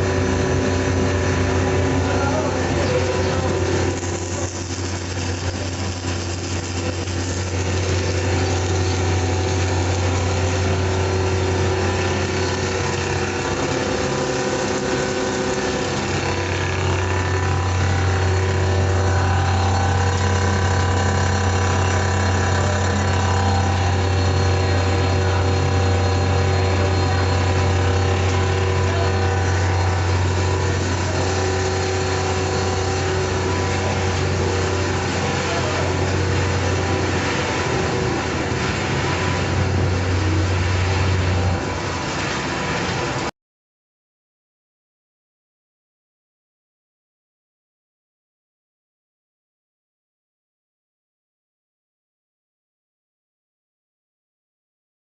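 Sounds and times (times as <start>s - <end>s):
low motor hum: 0.0s - 43.3s
mechanical noise: 0.0s - 43.3s
steady machine tones: 0.0s - 43.3s.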